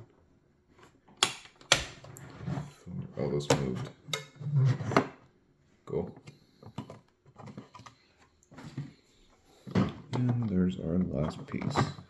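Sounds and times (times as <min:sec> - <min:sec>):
clicks of puzzle box parts: 0:01.2 - 0:02.0.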